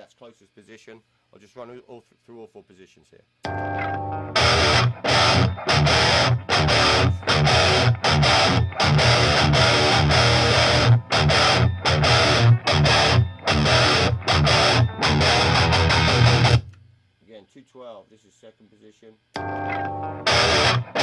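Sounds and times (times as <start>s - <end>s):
distorted electric guitar riff: 3.5s - 16.8s, 19.4s - 21.0s.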